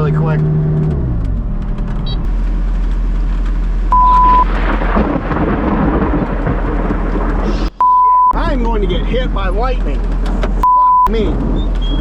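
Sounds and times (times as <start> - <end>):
rain: 2.3 - 7.8
short steady beep: 3.9 - 4.5, 7.8 - 8.4, 10.6 - 11.1
thunder crack and rumble: 3.9 - 7.8, 8.4 - 12.0.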